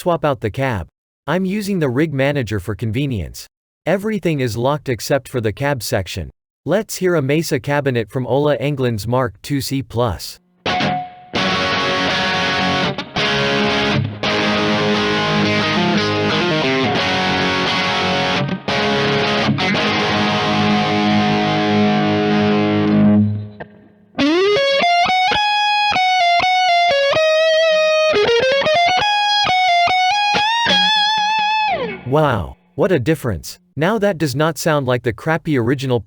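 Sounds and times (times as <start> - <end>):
distorted electric guitar: 10.6 - 32.1.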